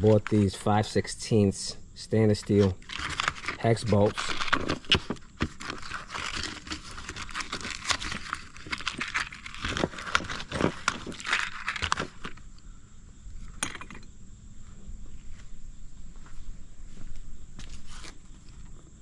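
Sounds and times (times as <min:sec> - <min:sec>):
packaging crinkling: 0:02.6 - 0:12.5
bolts clicking and clinking: 0:13.5 - 0:14.1.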